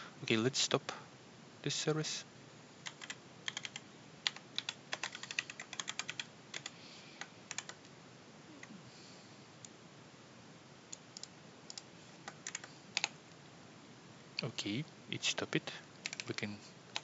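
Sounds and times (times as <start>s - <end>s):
keyboard typing: 2.8s - 6.8s, 7.5s - 7.8s, 11.0s - 13.2s, 16.0s - 17.0s.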